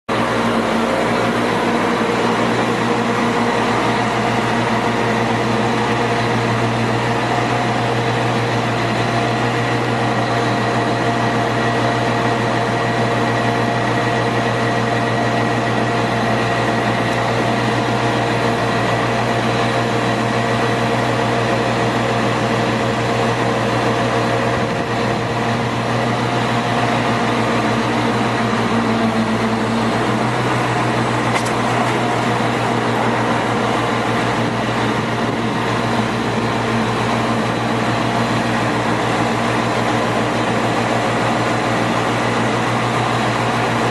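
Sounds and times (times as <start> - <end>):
diesel engine droning: 0.1 - 43.9.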